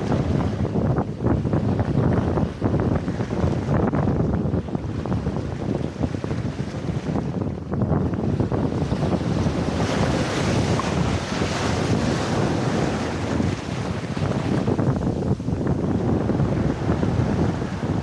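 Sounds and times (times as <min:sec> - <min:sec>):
wind buffeting microphone: 0:00.0 - 0:18.0
waves washing on shore: 0:08.0 - 0:18.0.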